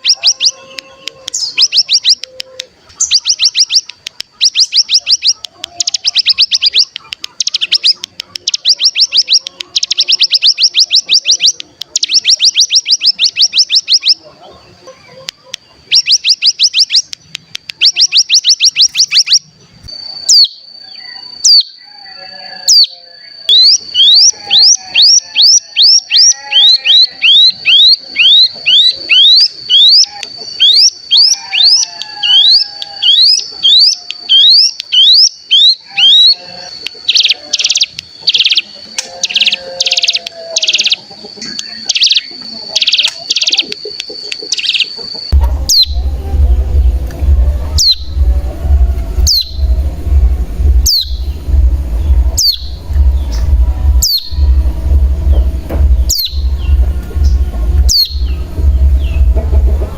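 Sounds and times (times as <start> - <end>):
buzzy trilled bursts: 45.3 - 59.9
low hum: 45.3 - 59.9.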